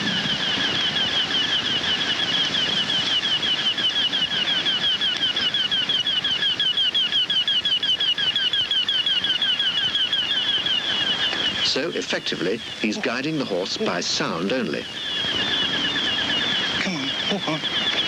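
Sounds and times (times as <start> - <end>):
high-pitched electronic chirps: 10.6 - 18.0.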